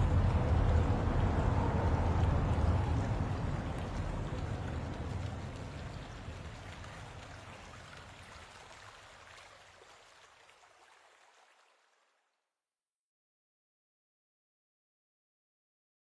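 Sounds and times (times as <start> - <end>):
water flowing and splashing: 0.0 - 12.4.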